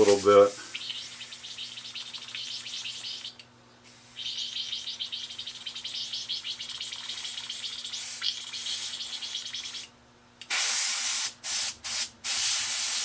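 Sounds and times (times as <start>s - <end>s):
paint sprayer hissing bursts: 8.0s - 8.9s, 10.5s - 13.0s.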